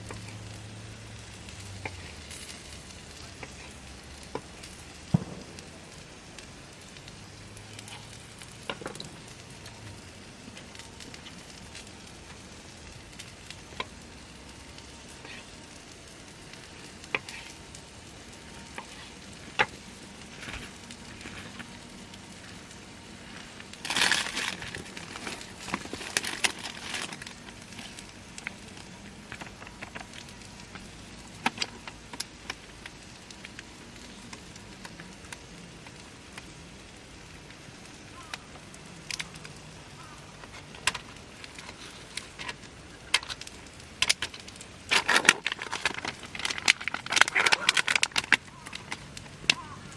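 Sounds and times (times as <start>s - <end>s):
clicks and crackles: 0.0s - 49.9s
food sizzling in a pan: 0.0s - 49.9s.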